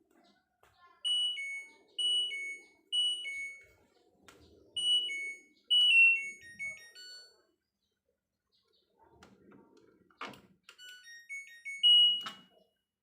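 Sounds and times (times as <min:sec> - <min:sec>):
two-note electronic beeps: 0:04.8 - 0:07.4.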